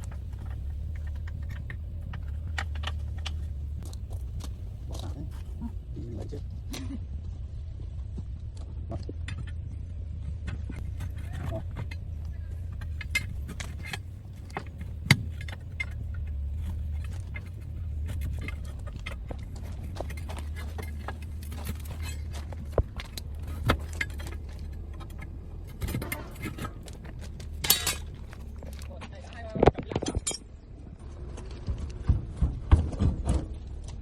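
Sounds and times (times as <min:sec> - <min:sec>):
low hum: 0:00.0 - 0:34.0
metal tools clinking: 0:10.8 - 0:28.9.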